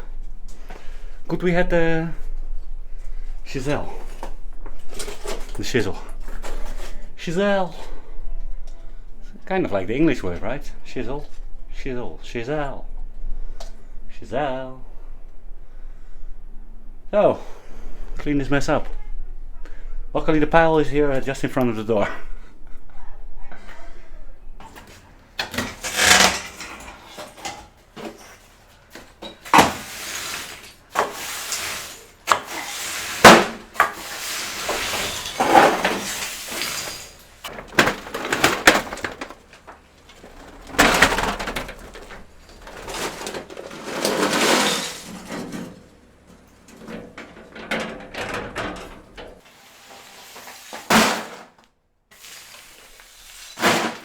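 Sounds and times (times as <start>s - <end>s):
rubble scraping and crashing: 3.2s - 7.5s, 24.6s - 54.0s.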